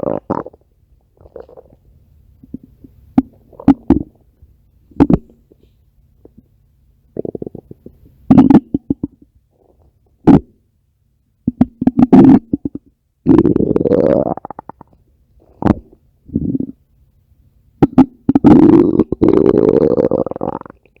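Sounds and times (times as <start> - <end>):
stomach growling: 0.0 - 1.8, 2.4 - 4.2, 7.2 - 10.4, 11.5 - 16.8, 17.8 - 21.0.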